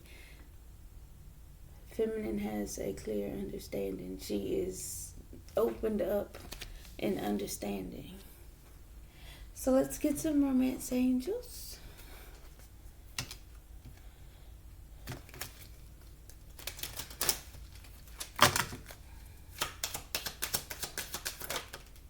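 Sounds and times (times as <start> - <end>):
cards shuffling: 6.3 - 7.0, 15.0 - 22.0
cards slapping: 15.0 - 22.0
rapid card clicks: 15.1 - 19.0, 19.6 - 22.0.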